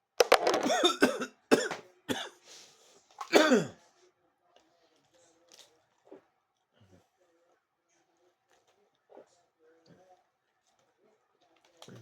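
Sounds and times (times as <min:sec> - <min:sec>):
man coughing: 0:00.6 - 0:02.4, 0:03.3 - 0:03.8.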